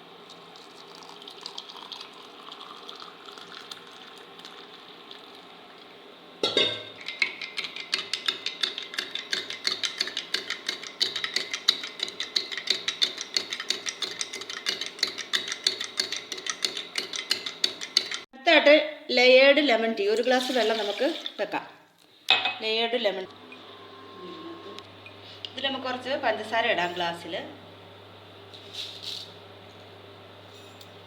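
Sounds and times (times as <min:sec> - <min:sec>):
spoon clinking in a glass: 0:30.4 - 0:31.0.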